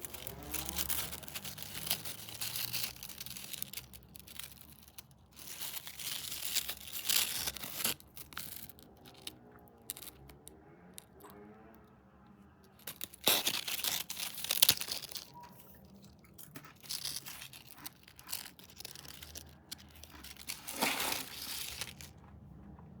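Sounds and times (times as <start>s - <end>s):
snack packaging crinkling and tearing: 0.0s - 11.7s, 12.7s - 22.2s
soft crackling: 12.7s - 22.3s.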